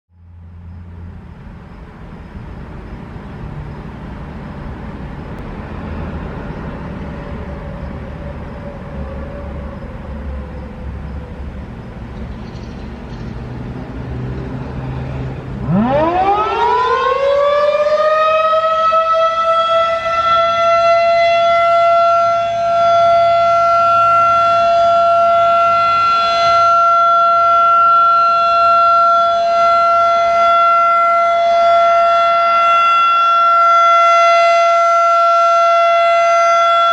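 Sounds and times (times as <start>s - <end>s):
warning siren winding up: 15.6s - 36.9s.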